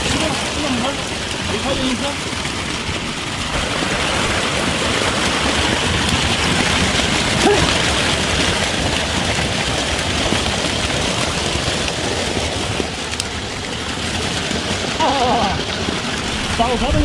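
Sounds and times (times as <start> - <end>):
storm runoff rushing through ditch: 0.0 - 17.0
faint voice: 7.4 - 7.7.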